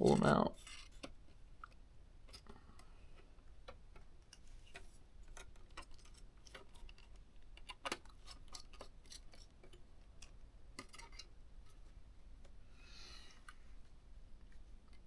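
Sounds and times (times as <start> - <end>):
small metal and plastic clicks: 0.6 - 11.8.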